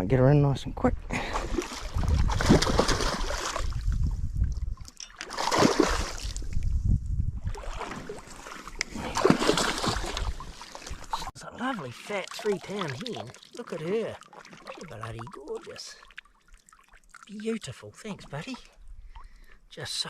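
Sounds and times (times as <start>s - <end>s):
fish thrashing water splashing: 1.4s - 3.9s, 5.1s - 6.4s, 7.5s - 17.3s.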